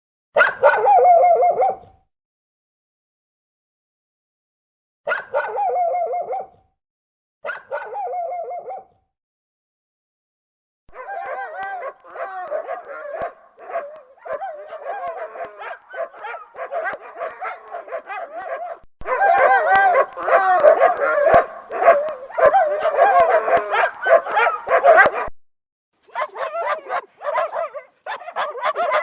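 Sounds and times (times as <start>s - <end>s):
dogs yelping: 0.4s - 1.9s, 5.1s - 6.6s, 7.4s - 8.9s, 10.9s - 25.3s, 26.0s - 29.0s
dogs whining and howling: 0.4s - 2.0s, 5.1s - 6.6s, 7.4s - 9.0s, 10.9s - 25.3s, 26.0s - 29.0s.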